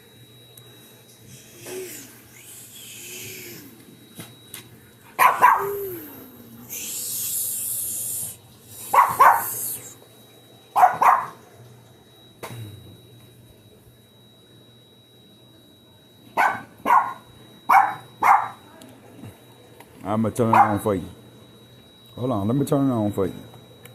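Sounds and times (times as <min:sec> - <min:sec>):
high hissing noise: 0:00.8 - 0:04.3, 0:05.2 - 0:10.2
dog barking: 0:05.2 - 0:05.8, 0:08.9 - 0:09.6, 0:10.8 - 0:11.4, 0:16.4 - 0:18.6, 0:20.5 - 0:20.9.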